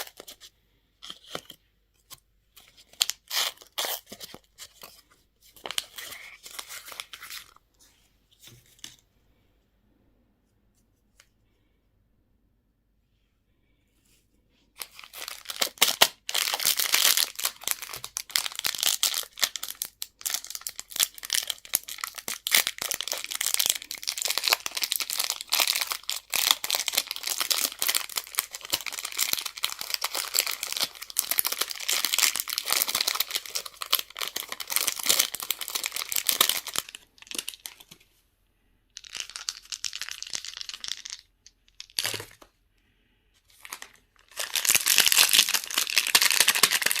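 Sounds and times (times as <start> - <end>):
candy wrappers crinkling: 0.0 - 1.6, 2.6 - 5.0, 5.6 - 7.6, 14.8 - 38.0, 39.0 - 42.5, 43.5 - 47.0.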